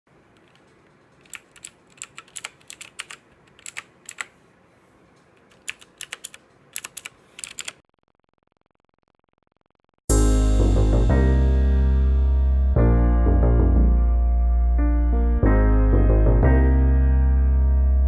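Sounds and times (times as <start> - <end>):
mechanical keyboard typing: 0.3 - 4.4, 5.4 - 7.8.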